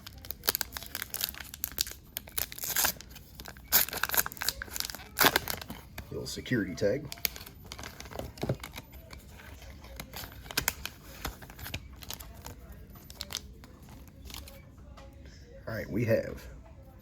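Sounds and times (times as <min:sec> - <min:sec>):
foil wrapper tearing and crinkling: 0:00.0 - 0:05.8, 0:07.0 - 0:14.6.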